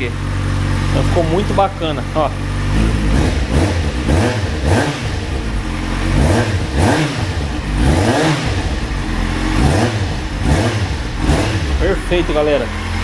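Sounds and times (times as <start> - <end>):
motorcycle engine revving: 0.0 - 13.0.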